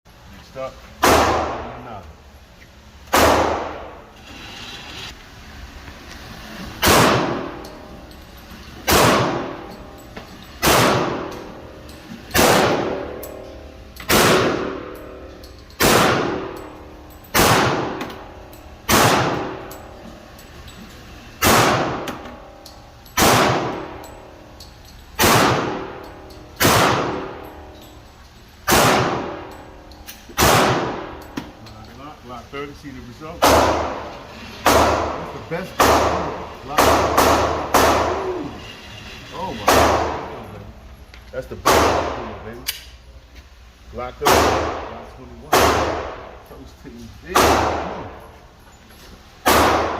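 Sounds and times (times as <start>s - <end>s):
pistol shots with ringing tail: 1.0s - 1.8s, 3.1s - 3.9s, 6.8s - 7.6s, 8.8s - 9.8s, 10.6s - 11.6s, 12.3s - 13.3s, 14.1s - 15.2s, 15.8s - 18.2s, 18.8s - 19.8s, 21.4s - 22.5s, 23.2s - 24.2s, 25.2s - 27.7s, 28.6s - 29.6s, 30.4s - 31.2s, 33.4s - 38.2s, 41.6s - 42.4s, 44.2s - 46.3s, 47.3s - 48.2s, 49.4s - 49.9s.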